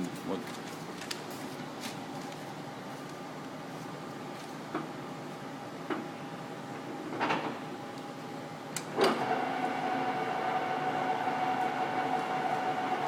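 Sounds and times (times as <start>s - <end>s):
lathe gear whine: 9.0s - 13.0s.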